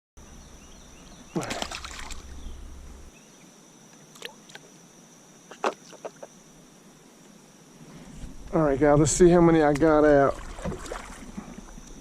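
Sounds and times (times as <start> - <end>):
low rumble: 0.2 - 3.1
faint high hum: 0.2 - 12.0.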